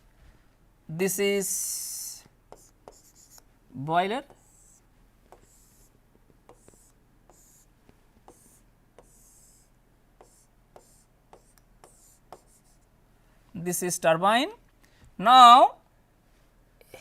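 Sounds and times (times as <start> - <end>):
pen scratching on paper: 2.5 - 3.4, 4.2 - 5.9, 6.5 - 12.8.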